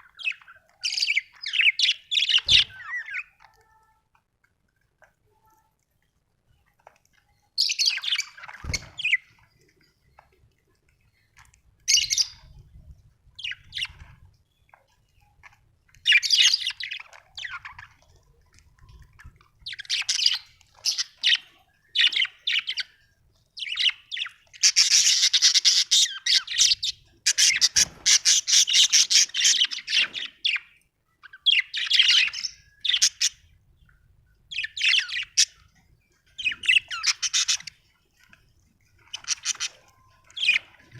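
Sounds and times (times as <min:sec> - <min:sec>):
budgerigar chirping and warbling: 0:23.6 - 0:30.6, 0:36.4 - 0:37.8.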